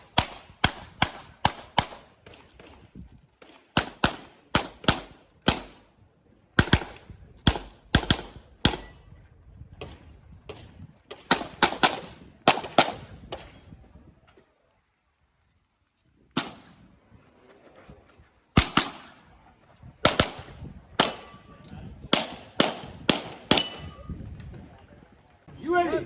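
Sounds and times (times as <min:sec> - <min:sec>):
handgun shots with echo: 0:20.0 - 0:21.4, 0:22.1 - 0:24.0.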